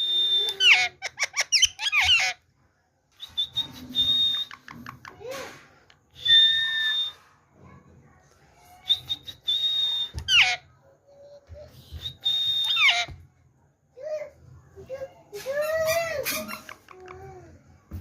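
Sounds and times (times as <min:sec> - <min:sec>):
parakeet whistling: 0:12.0 - 0:13.2.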